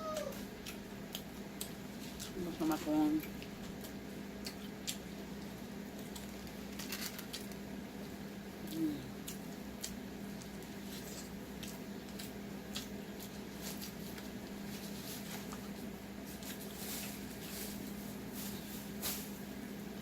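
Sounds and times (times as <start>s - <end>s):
steady low hum: 0.0s - 20.0s
wet chewing sounds: 0.2s - 2.4s, 3.2s - 7.6s, 8.6s - 15.8s.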